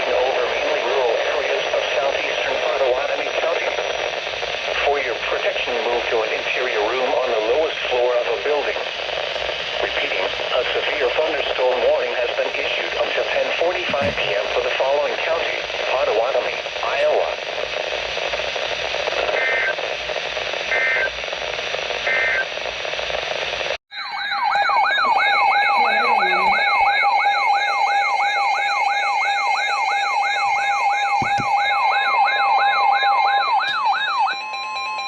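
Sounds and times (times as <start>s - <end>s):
radio static: 0.0s - 23.8s, 25.0s - 26.8s, 31.1s - 31.6s
emergency alert tone warbling: 24.0s - 35.0s
digital data tone bursts: 25.1s - 26.8s.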